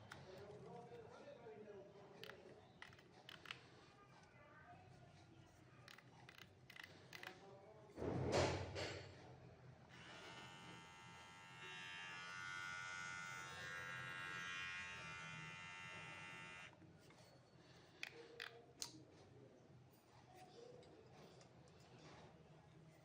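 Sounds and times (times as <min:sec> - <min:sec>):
beard trimmer buzzing: 0:09.9 - 0:16.7.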